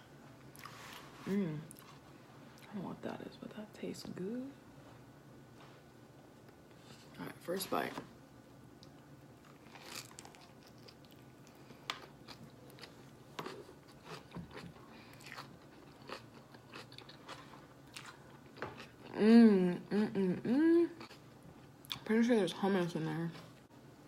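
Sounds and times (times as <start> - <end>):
person chewing food: 8.8 - 19.2, 21.0 - 22.0.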